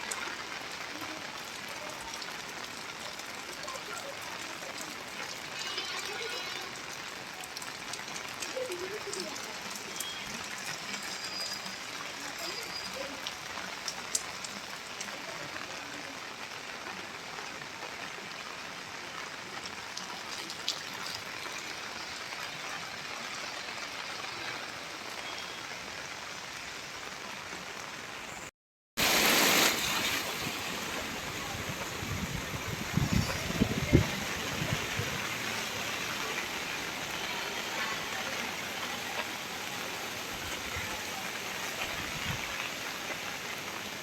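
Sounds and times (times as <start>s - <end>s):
raindrop ticks: 0.0s - 15.4s
heavy rain hissing: 0.0s - 44.0s.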